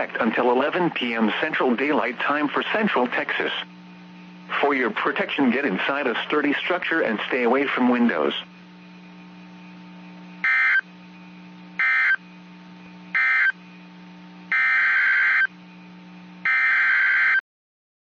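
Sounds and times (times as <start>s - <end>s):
steady low hum: 0.0s - 17.4s
harsh warbling data tones: 10.4s - 10.8s, 11.8s - 12.2s, 13.2s - 13.6s.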